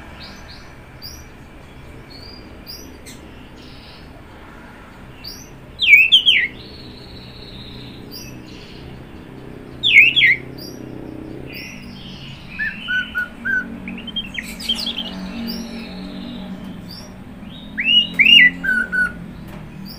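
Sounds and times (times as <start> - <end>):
thrush singing whistled notes: 5.1 - 19.9.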